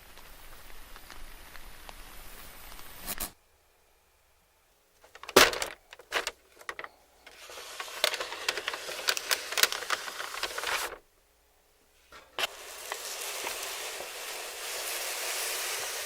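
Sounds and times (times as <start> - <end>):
crispy chicken crackling: 0.0 - 3.0, 5.0 - 11.0, 12.2 - 16.0.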